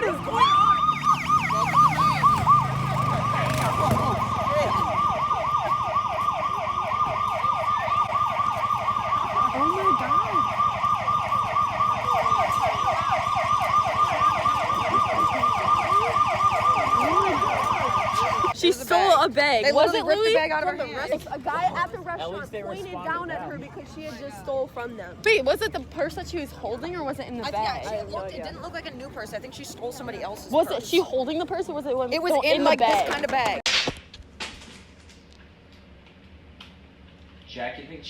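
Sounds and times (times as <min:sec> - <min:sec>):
emergency siren yelping: 0:00.0 - 0:18.6.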